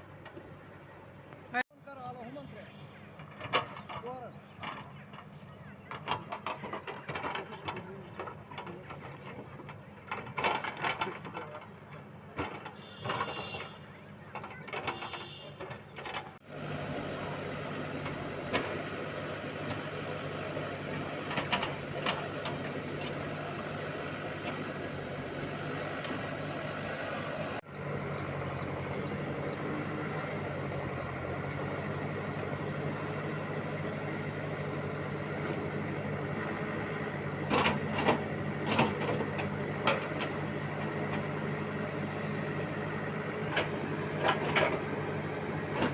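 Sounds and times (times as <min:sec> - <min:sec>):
bulldozer diesel engine running: 0:00.0 - 0:45.9
knocks and clatter: 0:03.2 - 0:16.4, 0:34.8 - 0:41.3.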